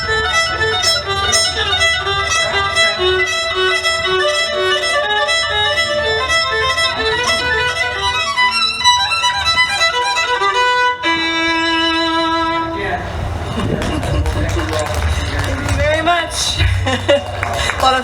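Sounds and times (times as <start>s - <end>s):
solo violin playing: 0.0s - 14.4s.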